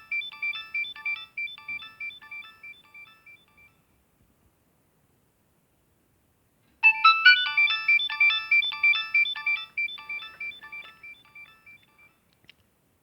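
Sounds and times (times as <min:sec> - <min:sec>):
mobile phone polyphonic ringtone: 0:00.0 - 0:03.8, 0:06.8 - 0:12.2.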